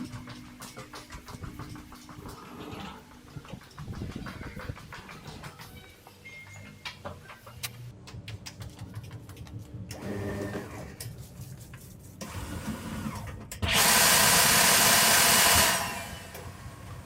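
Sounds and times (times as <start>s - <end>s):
factory machinery clicking and humming: 0.0s - 10.2s.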